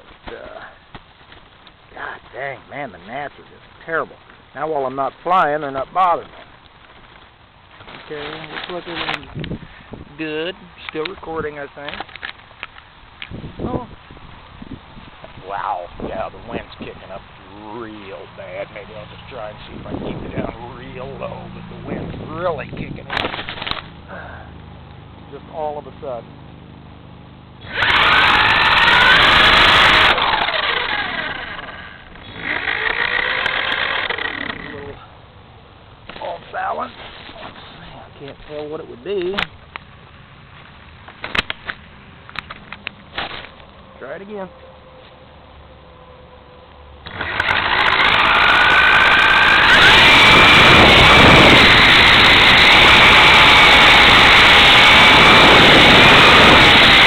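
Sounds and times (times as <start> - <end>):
model helicopter motor whine: 27.6 - 35.0, 47.0 - 57.0.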